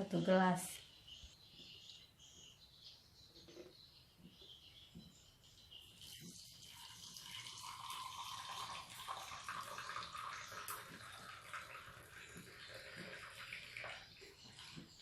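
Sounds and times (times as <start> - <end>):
liquid trickling into a glass: 5.8 - 15.0.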